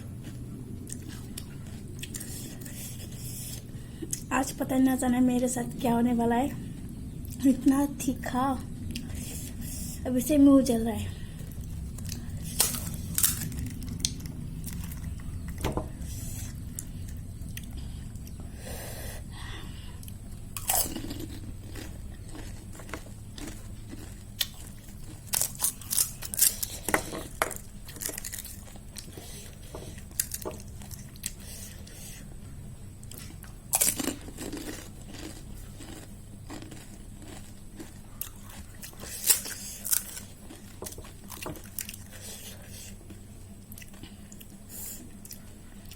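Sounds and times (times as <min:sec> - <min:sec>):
steady low hum: 0:00.0 - 0:45.9
crisp shells crunching when chewed: 0:00.1 - 0:04.3, 0:11.5 - 0:18.4, 0:20.0 - 0:31.9, 0:33.0 - 0:45.9.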